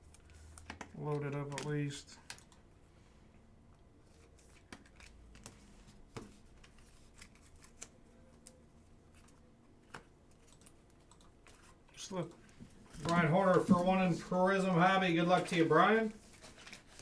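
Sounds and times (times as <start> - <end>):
faint clicks and taps: 0.1 - 2.7, 3.7 - 14.2.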